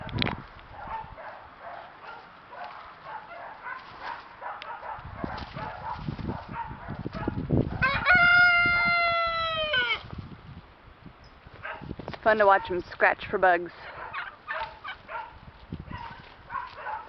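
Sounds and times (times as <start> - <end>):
rooster crowing: 7.8 - 10.0
chickens clucking: 13.8 - 15.2.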